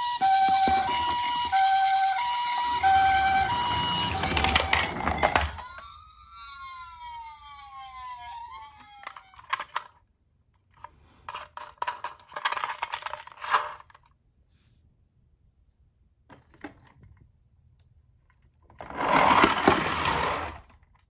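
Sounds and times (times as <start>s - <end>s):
plastic toy vehicles clattering: 0.0s - 5.7s, 9.0s - 10.0s, 10.8s - 14.1s, 18.3s - 20.9s
siren tone sliding down: 0.0s - 8.9s
two-tone siren: 0.0s - 9.5s.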